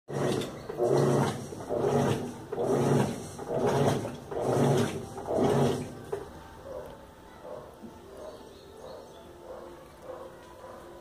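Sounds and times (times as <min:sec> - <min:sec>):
washing machine agitating: 0:00.1 - 0:06.3.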